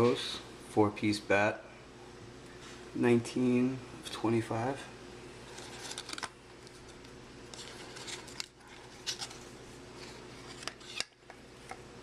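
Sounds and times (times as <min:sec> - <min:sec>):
faint steady hum: 0:00.0 - 0:12.0
card packaging clicks and rustles: 0:05.5 - 0:11.8.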